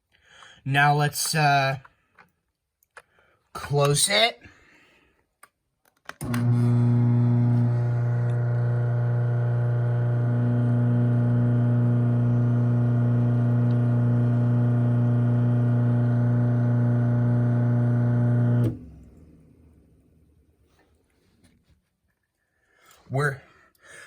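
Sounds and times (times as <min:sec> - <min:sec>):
garage door opener motor humming: 0:06.2 - 0:19.2.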